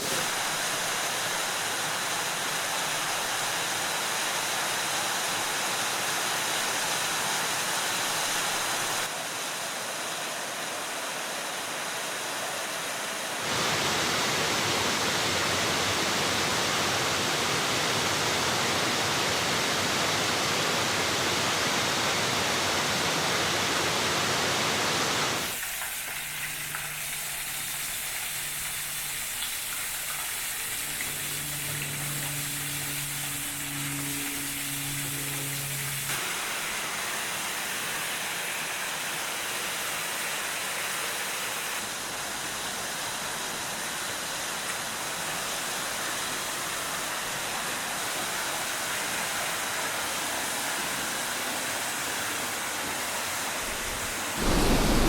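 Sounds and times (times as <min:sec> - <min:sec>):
waterfall rushing: 0:53.6 - 0:55.0.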